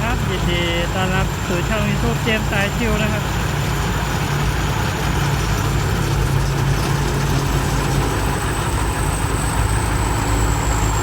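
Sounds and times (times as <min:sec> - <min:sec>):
diesel engine deep rumble: 0:00.0 - 0:11.0
high turbo whistle: 0:08.7 - 0:11.0.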